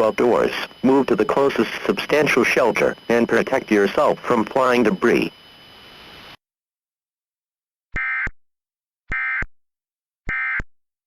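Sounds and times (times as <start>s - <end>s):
digital data tone bursts: 0.0s - 6.2s, 9.1s - 9.5s, 10.3s - 10.7s.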